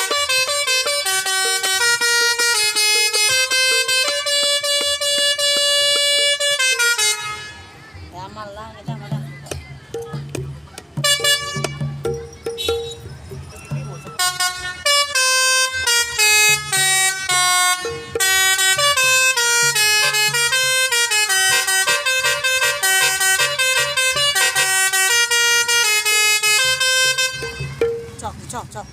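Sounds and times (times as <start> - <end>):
bus horn playing fast melody: 0.0 - 7.7, 11.0 - 11.9, 14.2 - 27.8.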